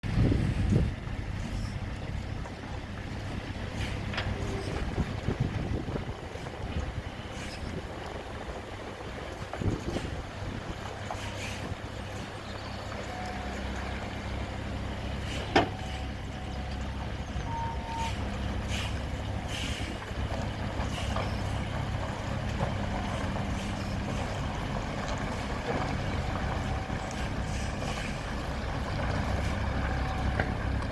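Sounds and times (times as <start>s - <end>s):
large engine running: 0.0s - 30.9s
faint short beeps: 17.5s - 18.2s.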